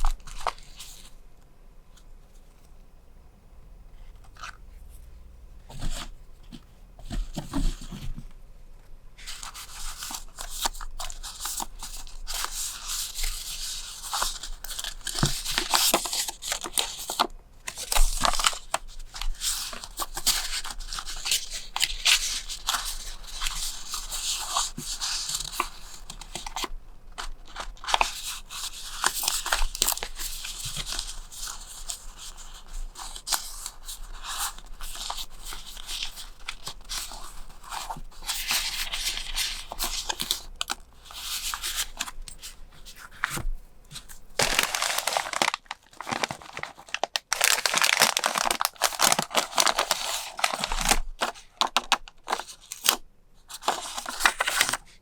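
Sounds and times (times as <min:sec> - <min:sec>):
packaging tearing and crinkling: 0:27.5 - 0:33.8, 0:44.0 - 0:53.0.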